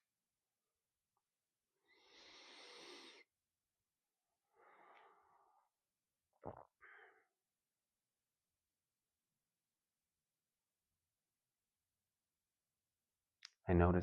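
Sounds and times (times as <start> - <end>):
slow breathing: 1.8 - 3.4, 4.5 - 5.8.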